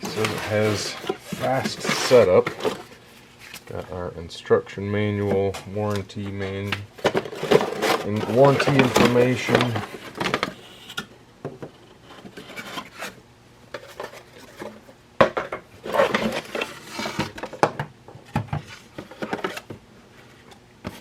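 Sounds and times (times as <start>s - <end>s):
paper and plastic rustling: 0.0s - 4.0s, 5.2s - 11.0s, 12.0s - 14.9s, 15.8s - 17.7s
parts clicking and clattering: 5.3s - 12.9s.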